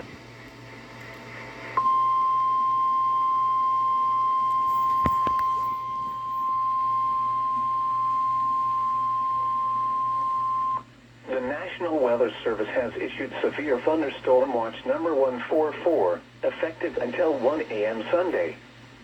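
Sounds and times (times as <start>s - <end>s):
steady single-pitch alarm beep: 1.8s - 10.8s.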